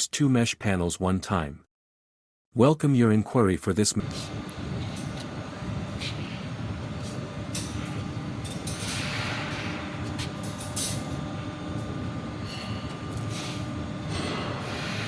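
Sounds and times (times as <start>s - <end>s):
machinery rumbling: 4.0s - 15.0s.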